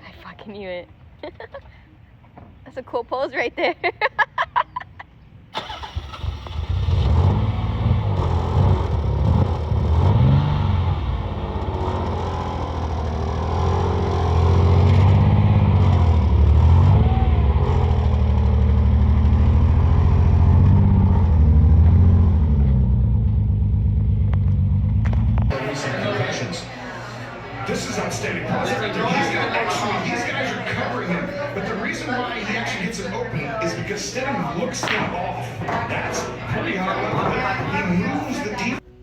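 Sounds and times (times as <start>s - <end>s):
car engine starting and revving: 5.6s - 25.6s.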